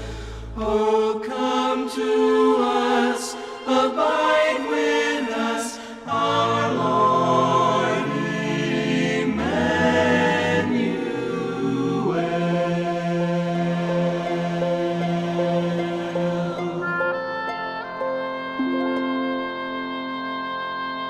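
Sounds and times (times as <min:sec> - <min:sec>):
low bass line: 0:00.0 - 0:00.7
choir singing sustained chords: 0:00.0 - 0:20.9.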